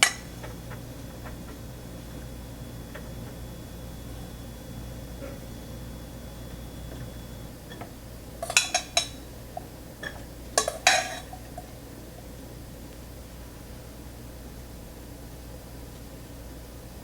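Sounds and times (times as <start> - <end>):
utensils clinking against dishes: 0.0 - 0.5, 7.7 - 11.9
steady low hum: 0.0 - 17.0.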